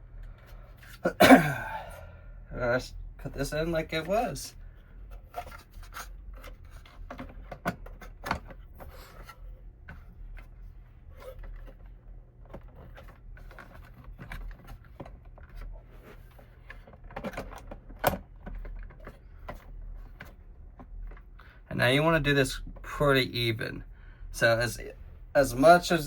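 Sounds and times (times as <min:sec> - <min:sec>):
clicks and knocks of computer parts: 0:05.2 - 0:09.3, 0:16.7 - 0:21.3.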